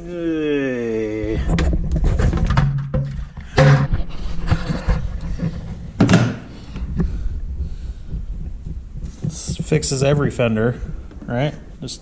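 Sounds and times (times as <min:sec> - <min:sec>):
steady low hum: 0:01.1 - 0:12.0
loud knocks: 0:01.6 - 0:04.1, 0:05.4 - 0:07.1.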